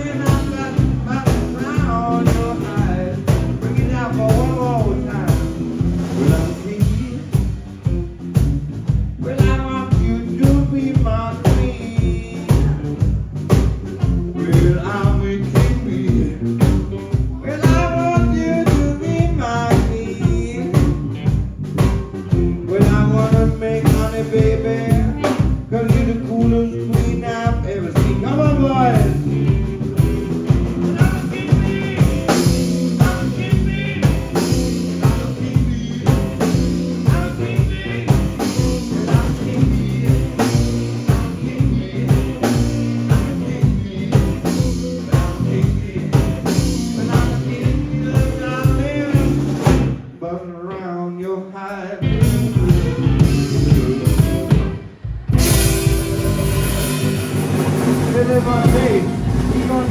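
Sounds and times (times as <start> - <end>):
blues band playing: 0.0 - 50.2, 51.8 - 59.9
wavering guitar solo: 52.0 - 59.9.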